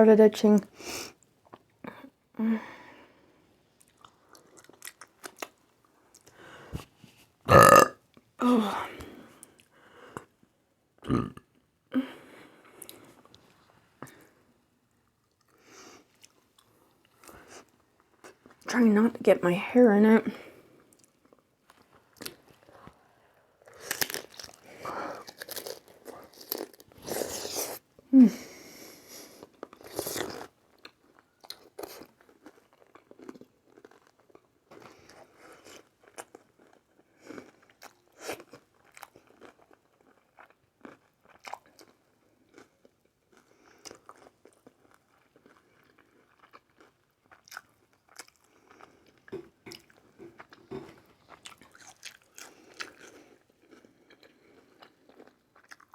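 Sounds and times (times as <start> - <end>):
crunchy bites and wet chewing: 3.8 - 6.4, 23.6 - 27.8, 29.5 - 42.7, 43.3 - 55.9.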